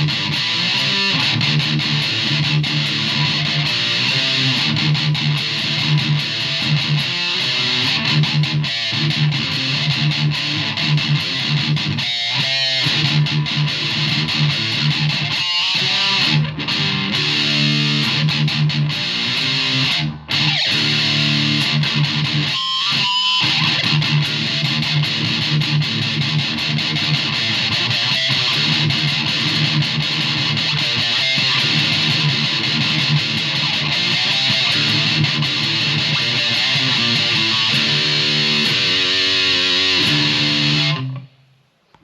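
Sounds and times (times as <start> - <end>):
strummed electric guitar music: 0.0 - 41.4.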